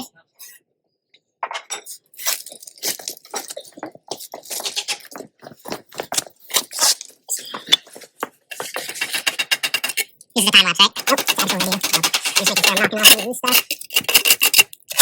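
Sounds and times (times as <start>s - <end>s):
hand tools scraping stone: 1.8s - 15.0s.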